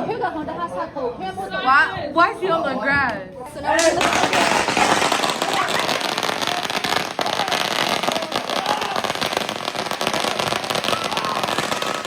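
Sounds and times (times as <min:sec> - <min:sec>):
fireworks crackling: 0:03.7 - 0:12.0.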